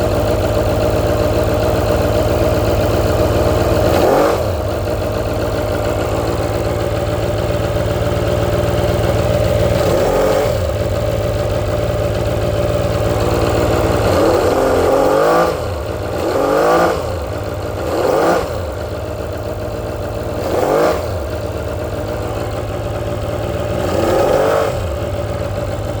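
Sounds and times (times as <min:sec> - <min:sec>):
jet ski engine revving: 0:03.3 - 0:04.8, 0:13.0 - 0:18.8, 0:20.3 - 0:21.4, 0:23.7 - 0:26.0.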